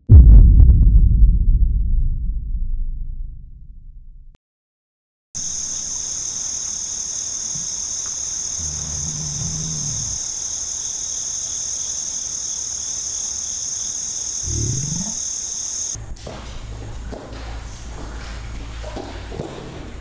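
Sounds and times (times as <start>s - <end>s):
crickets chirping: 5.4s - 20.0s
low zombie growls: 8.6s - 10.2s, 14.4s - 15.2s.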